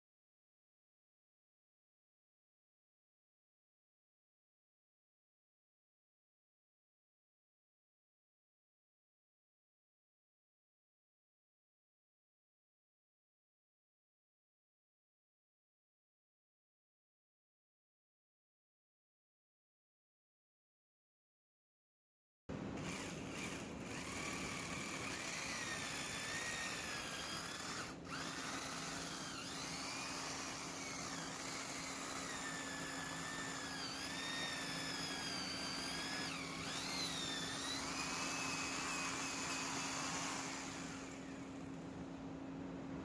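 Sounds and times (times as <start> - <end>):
power tool motor whining: 22.8 - 41.8.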